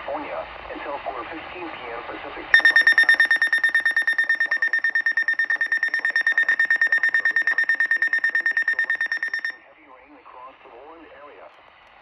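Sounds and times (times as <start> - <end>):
high-pitched weather radio beeping: 2.6 - 9.6.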